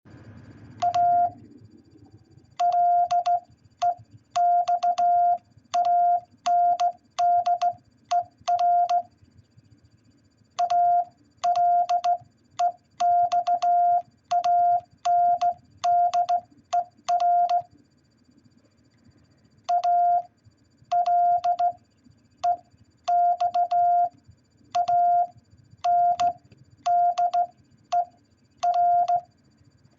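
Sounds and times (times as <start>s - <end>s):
morse code beeps: 0.8s - 1.4s, 2.6s - 9.1s, 10.6s - 17.7s, 19.7s - 20.3s, 20.9s - 21.8s, 22.4s - 29.3s.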